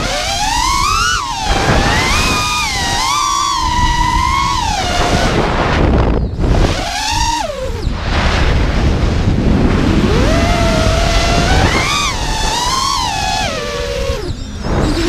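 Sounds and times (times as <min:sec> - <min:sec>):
drone motors whining: 0:00.0 - 0:15.0
wind on microphone: 0:00.0 - 0:15.0.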